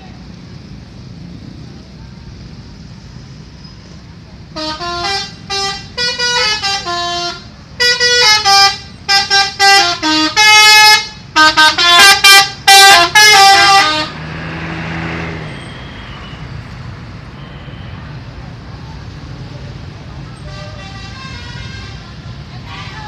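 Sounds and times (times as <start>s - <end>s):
engine and road noise: 0.0s - 23.0s
musical car horn tune: 4.6s - 14.2s.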